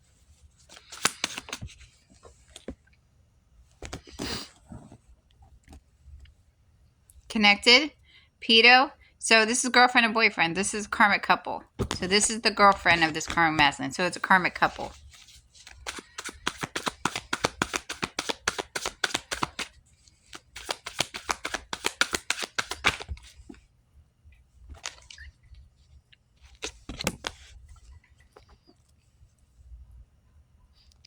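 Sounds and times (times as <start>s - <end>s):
cards shuffling by hand: 0.5s - 2.8s, 3.7s - 5.1s, 11.8s - 23.6s, 24.7s - 25.3s, 26.4s - 28.6s
card flicks: 0.8s - 1.6s, 15.8s - 19.7s, 20.3s - 23.1s.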